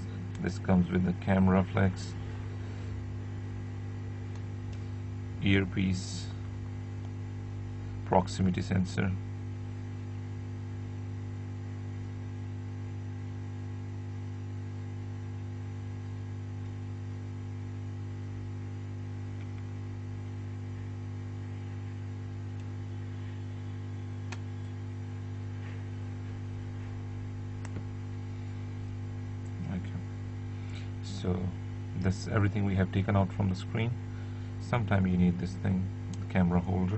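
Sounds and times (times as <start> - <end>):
low electrical hum: 0.0 - 36.9.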